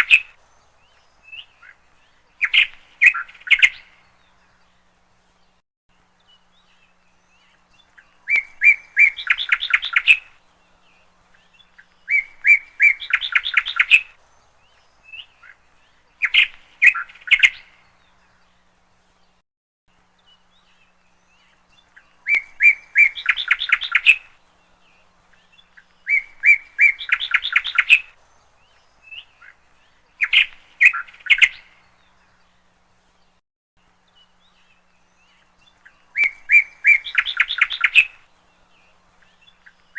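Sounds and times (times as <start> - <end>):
bird-like chirping: 0.0 - 4.9, 6.2 - 18.7, 20.2 - 33.4, 34.0 - 39.9.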